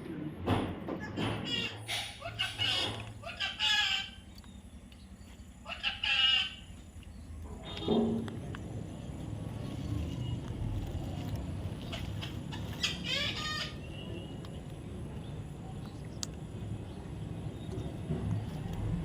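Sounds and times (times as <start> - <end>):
harsh bird call: 1.1 - 4.3, 5.6 - 6.8, 11.9 - 14.2
low steady rumble: 2.2 - 13.8.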